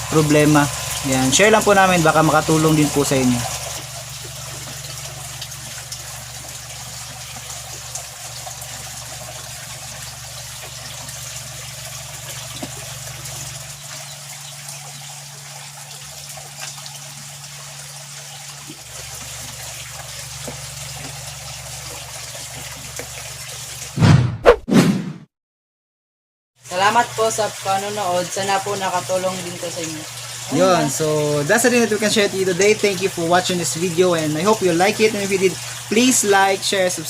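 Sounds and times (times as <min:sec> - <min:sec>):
air pump electric hum: 0:00.0 - 0:15.1
aquarium water bubbling: 0:00.0 - 0:24.0, 0:26.7 - 0:37.0.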